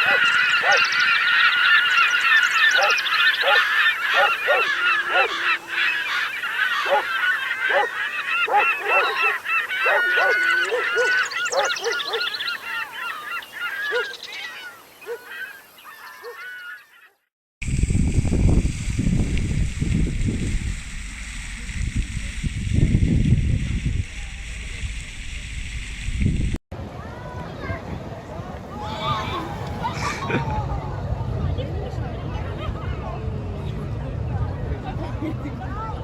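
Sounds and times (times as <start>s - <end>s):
flock of birds calling: 0.0s - 17.3s, 28.7s - 30.5s.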